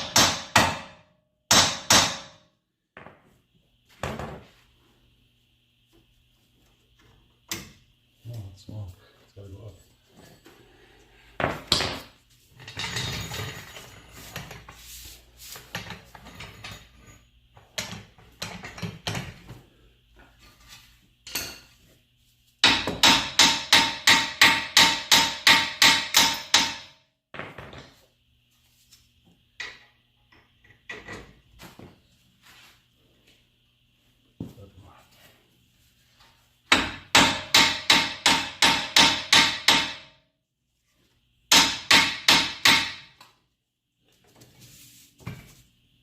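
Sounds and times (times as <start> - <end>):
hammer striking metal: 0.0 - 2.4, 22.6 - 27.0, 36.7 - 40.2, 41.5 - 43.2.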